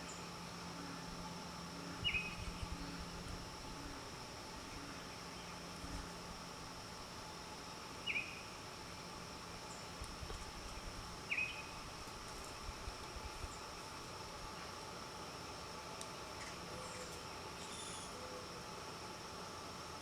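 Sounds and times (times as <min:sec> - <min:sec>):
high insect-like drone: 0:00.0 - 0:19.2.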